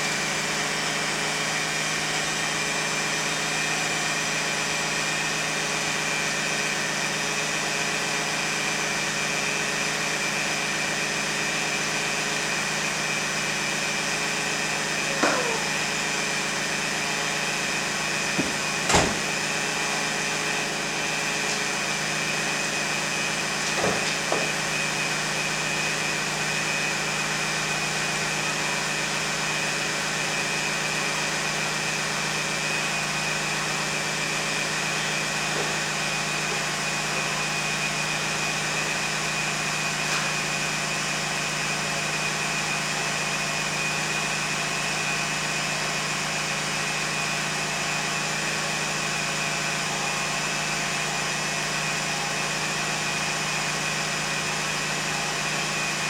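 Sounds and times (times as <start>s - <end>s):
car engine running with whine: 13.8s - 22.4s.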